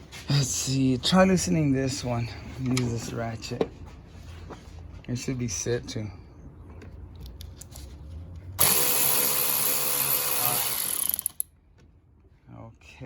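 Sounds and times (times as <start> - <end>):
power ratchet running: 8.6 - 11.5.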